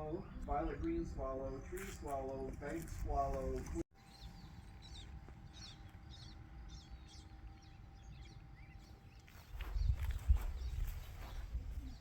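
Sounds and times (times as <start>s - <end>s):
small bird chirping: 4.0s - 12.0s.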